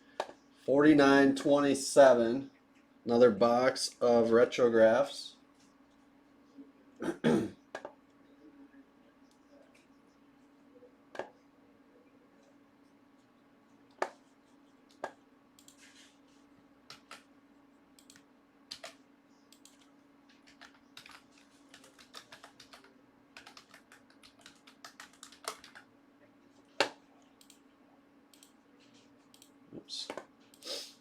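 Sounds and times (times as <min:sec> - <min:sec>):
faint steady hum: 0:00.0 - 0:31.0
keyboard typing: 0:16.9 - 0:17.3, 0:18.0 - 0:25.9.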